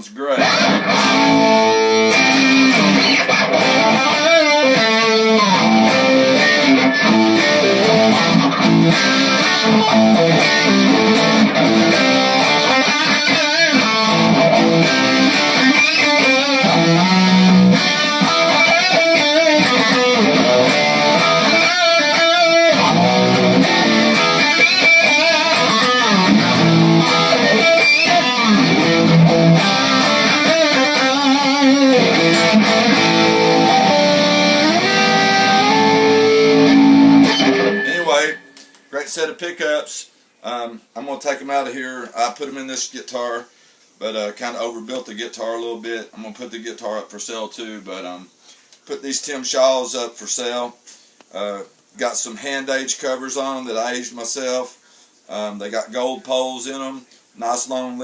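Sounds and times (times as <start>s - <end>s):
overdriven electric guitar: 0.4s - 38.1s.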